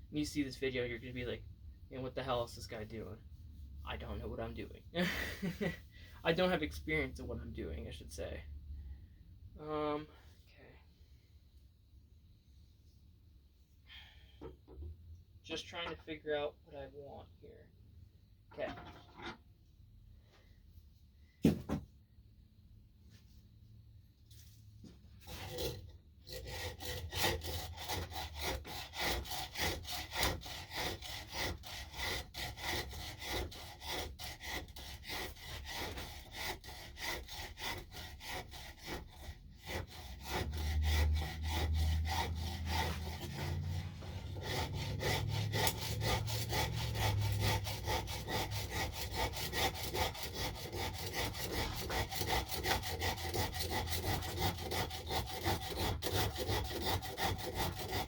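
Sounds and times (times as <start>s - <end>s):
hand file rasping on wood: 25.2s - 58.0s.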